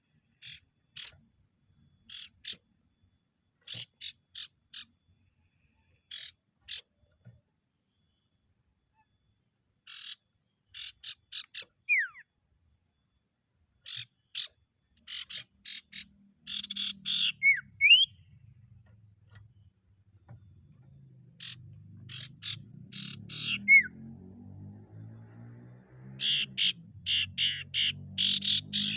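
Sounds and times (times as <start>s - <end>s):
bird singing sharp notes: 13.9s - 18.3s, 20.7s - 25.0s, 26.1s - 28.9s.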